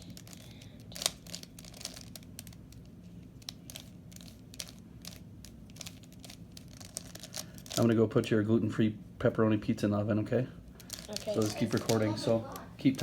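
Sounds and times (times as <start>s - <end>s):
puzzle cube plastic clicks: 0.0s - 7.8s.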